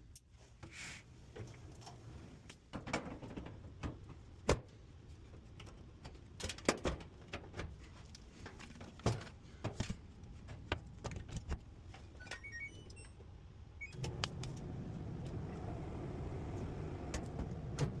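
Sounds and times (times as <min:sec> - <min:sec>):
clothes dryer motor humming: 0:13.8 - 0:18.0.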